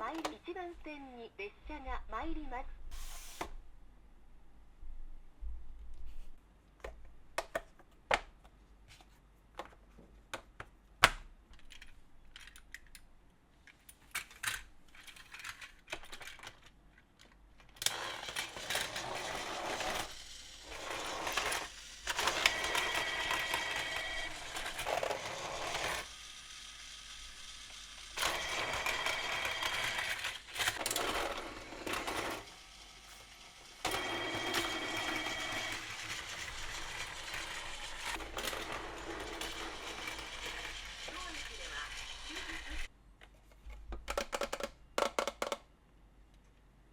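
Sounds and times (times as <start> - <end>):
plastic toy track pieces clicking: 14.1 - 16.7, 17.7 - 42.9, 44.1 - 45.6
toy train rattling whir: 17.7 - 42.9.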